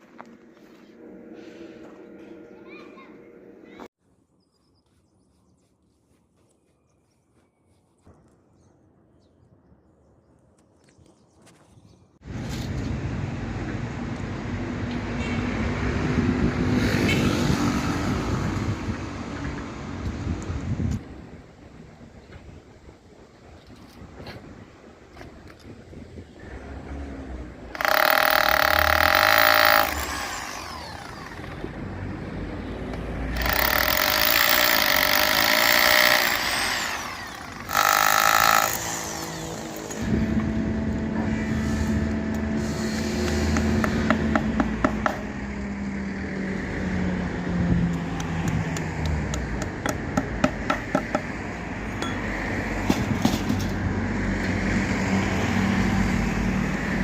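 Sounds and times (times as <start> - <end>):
steady hum: 0.0 - 3.8
power tool grinding iron: 26.6 - 31.8, 33.3 - 41.2
sharp clicks and taps: 47.9 - 51.3.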